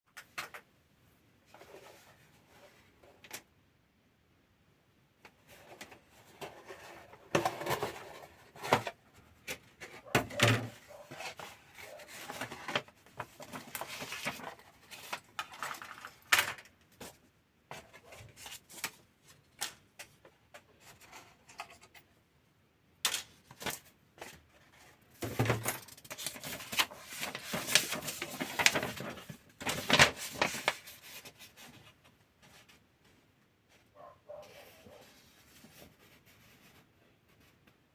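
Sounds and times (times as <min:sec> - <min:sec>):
cardboard box and plastic rustling: 0:05.4 - 0:19.1, 0:23.4 - 0:32.9.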